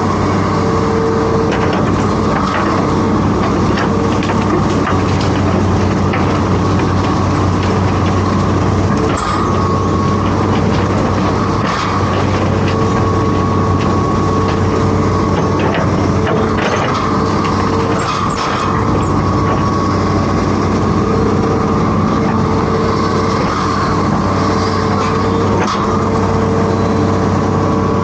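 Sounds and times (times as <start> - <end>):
excavator diesel engine running: 0.0 - 28.0
high steady whine: 0.0 - 28.0
short clanks and knocks: 1.5 - 19.8.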